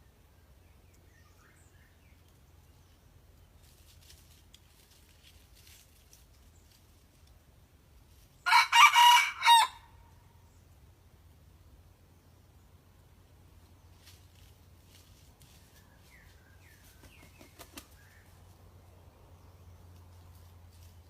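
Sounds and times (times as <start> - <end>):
rooster crowing: 8.5 - 10.0.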